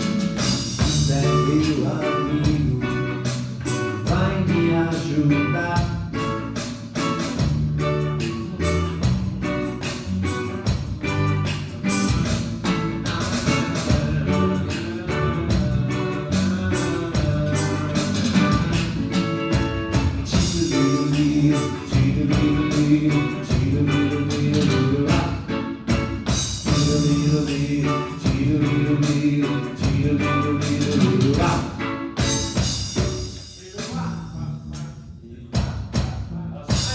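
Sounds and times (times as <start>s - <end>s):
pop song played by band: 0.0s - 34.2s, 35.9s - 36.9s
person singing: 0.9s - 6.0s, 7.8s - 10.4s, 12.7s - 25.6s, 26.7s - 32.6s.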